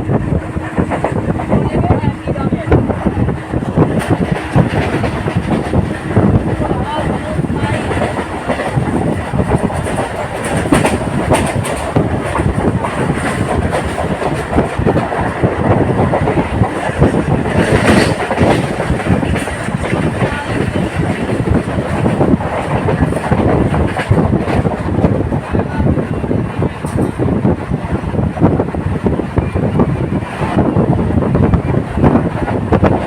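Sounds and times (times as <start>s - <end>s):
train coach rumbling and rattling: 0.0s - 33.0s.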